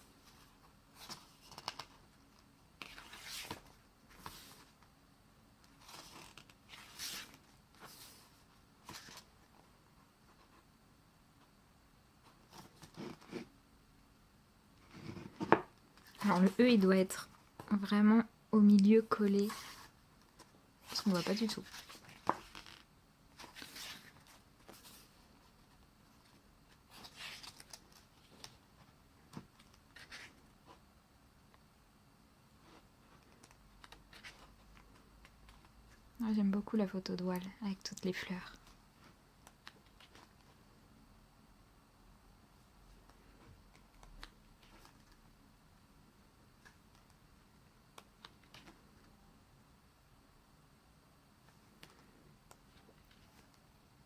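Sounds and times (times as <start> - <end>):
pages turning: 0.3 - 2.0, 2.8 - 4.8, 5.7 - 9.5, 19.3 - 25.2, 26.7 - 28.6, 29.3 - 30.8, 32.7 - 35.7, 39.4 - 40.6, 43.7 - 45.2, 48.1 - 48.8.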